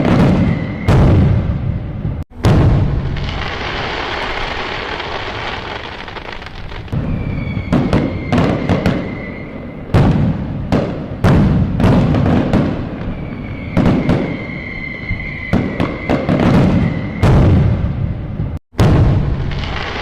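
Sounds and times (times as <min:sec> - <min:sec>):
faint firework whistle: 0:00.0 - 0:01.6, 0:03.2 - 0:10.2, 0:12.5 - 0:18.1
fireworks bangs: 0:00.0 - 0:20.0
fireworks crackling hiss: 0:02.8 - 0:10.5, 0:19.3 - 0:20.0.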